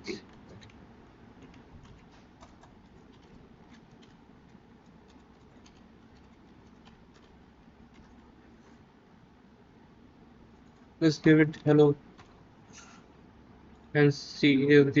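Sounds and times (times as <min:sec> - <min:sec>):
low steady hum: 0:00.0 - 0:15.0
keyboard keys clicking: 0:01.4 - 0:08.2.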